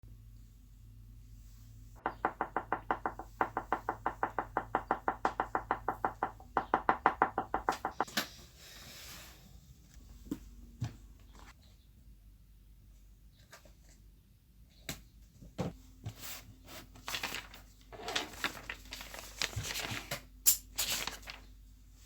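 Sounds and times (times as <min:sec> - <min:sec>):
rapid even knocking: 0:02.0 - 0:08.1.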